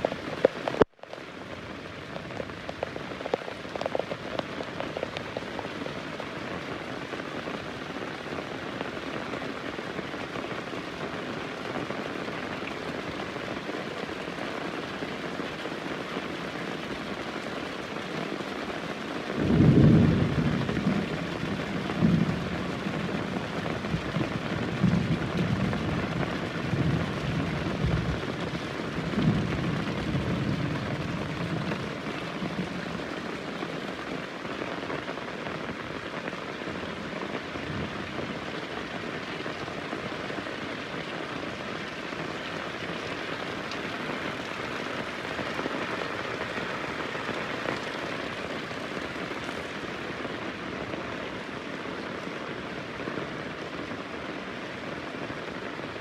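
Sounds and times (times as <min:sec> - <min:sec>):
heavy rain: 0:00.0 - 0:56.0
thunder rumbling: 0:19.4 - 0:33.5.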